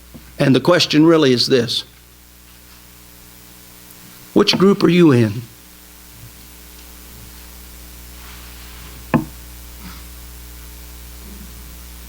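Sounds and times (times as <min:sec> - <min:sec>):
steady electrical hum: 0:00.0 - 0:12.0
sharp knock: 0:09.1 - 0:09.4.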